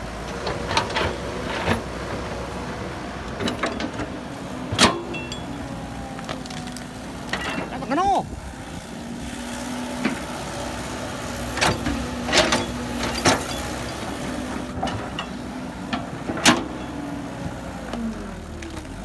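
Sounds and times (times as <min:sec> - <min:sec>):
excavator engine running: 0:00.0 - 0:19.0
metal knocks and clunks: 0:03.2 - 0:06.4.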